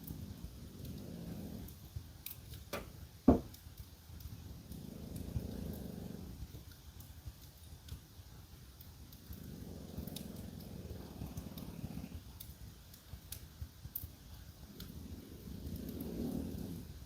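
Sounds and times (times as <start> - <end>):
dog snoring: 0.0 - 1.9, 4.4 - 6.7, 9.2 - 12.4, 14.6 - 17.0
wood fire crackling: 0.0 - 17.0.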